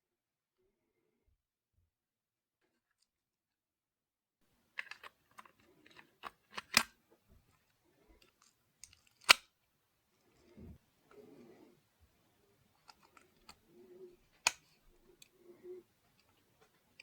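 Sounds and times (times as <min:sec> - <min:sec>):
plastic clicks and snaps: 0:04.7 - 0:07.0, 0:08.2 - 0:09.6, 0:12.8 - 0:13.6, 0:14.3 - 0:15.4.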